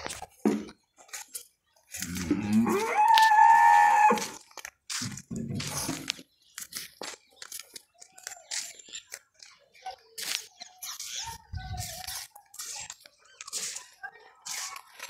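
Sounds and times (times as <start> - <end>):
cow mooing: 2.1 - 4.3.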